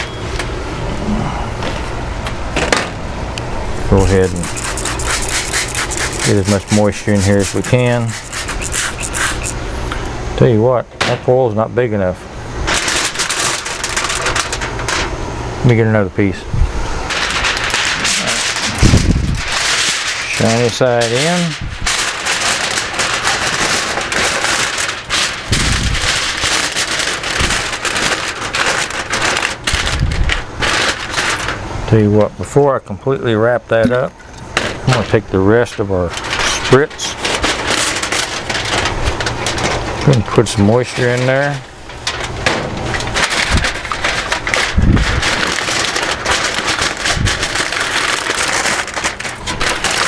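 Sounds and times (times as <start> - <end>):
aluminium foil crinkling: 3.7 - 10.2, 12.6 - 15.2, 17.1 - 32.5, 33.8 - 50.0.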